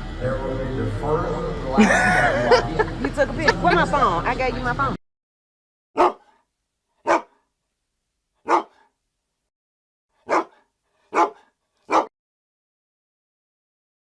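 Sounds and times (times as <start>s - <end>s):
dog barking: 6.0s - 6.4s, 7.0s - 7.4s, 8.4s - 9.0s, 10.2s - 12.1s.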